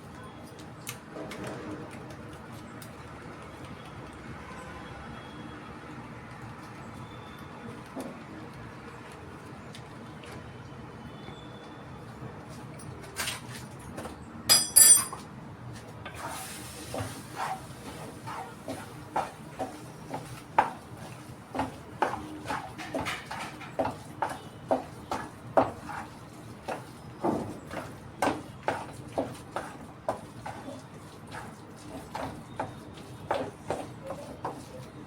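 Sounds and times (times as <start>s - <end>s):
metal utensil clanging on pan: 14.5s - 15.2s.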